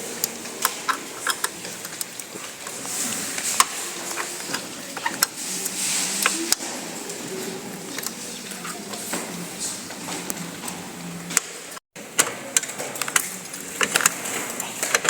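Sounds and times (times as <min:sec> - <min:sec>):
clicks taps and scrapes of parts: 0:00.2 - 0:07.3, 0:12.2 - 0:15.0.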